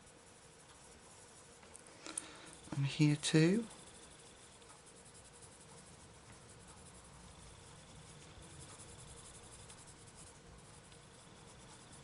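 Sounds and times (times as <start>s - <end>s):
pencil scratching on paper: 0.0s - 1.7s, 2.5s - 12.0s.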